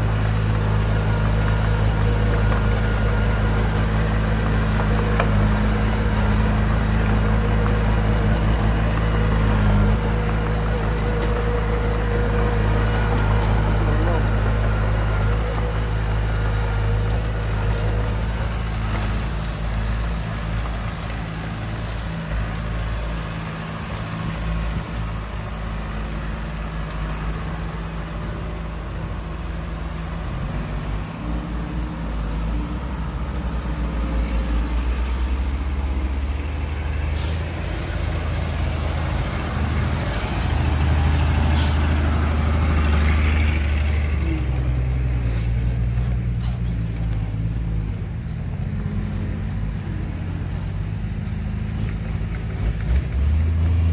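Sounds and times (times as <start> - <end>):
heavy diesel engines running: 0.0 - 53.9.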